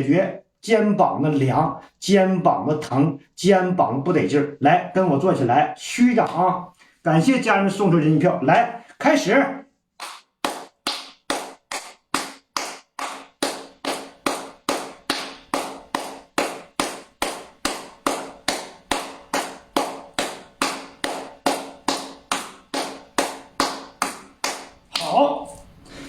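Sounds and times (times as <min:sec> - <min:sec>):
rhythmic slapping on skin: 0:09.9 - 0:25.2.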